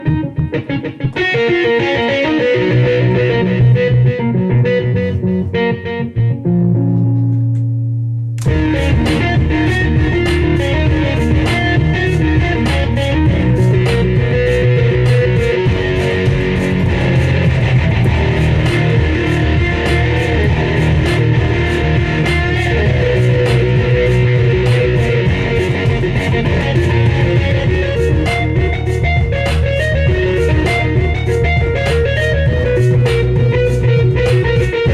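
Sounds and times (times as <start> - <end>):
guitar and bass music with beat: 0.0 - 34.9.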